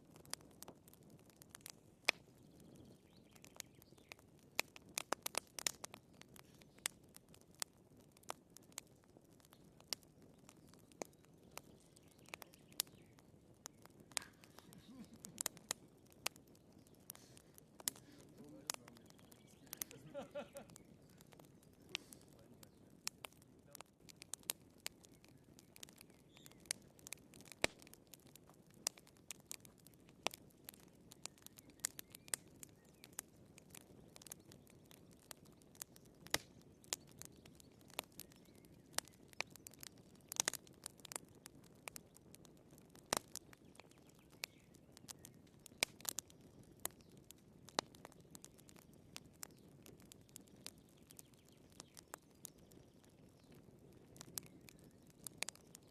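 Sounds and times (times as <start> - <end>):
firewood crackling and popping: 0.0 - 55.9
soft rush of flame: 9.4 - 34.5.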